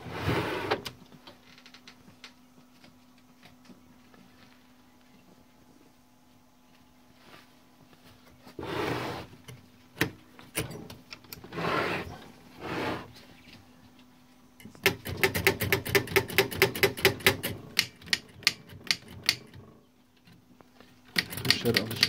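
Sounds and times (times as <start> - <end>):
longer noisy typewriter sounds: 14.8 - 19.6, 21.1 - 22.0
typewriter keystrokes: 14.8 - 19.6, 21.2 - 22.0.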